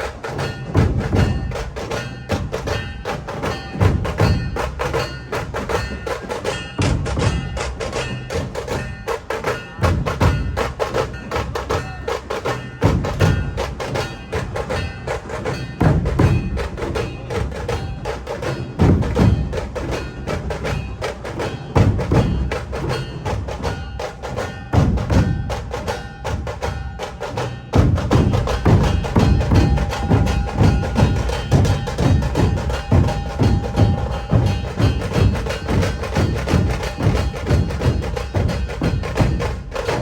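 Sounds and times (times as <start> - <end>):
woodblock-like percussion beat: 0.0 - 40.0
heavy low drum hits: 27.7 - 40.0.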